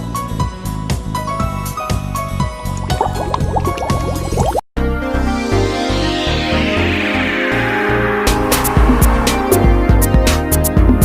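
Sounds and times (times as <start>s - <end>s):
background music with drum beat: 10.0s - 11.0s.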